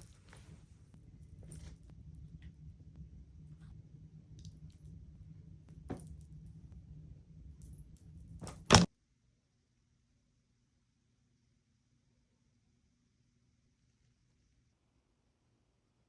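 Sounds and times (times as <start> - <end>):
low steady rumble: 0.0 - 8.8.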